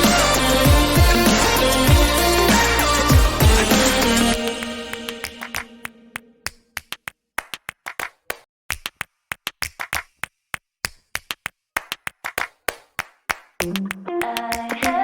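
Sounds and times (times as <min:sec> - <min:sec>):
background music: 0:00.0 - 0:06.4
sharp hand claps: 0:06.5 - 0:15.0.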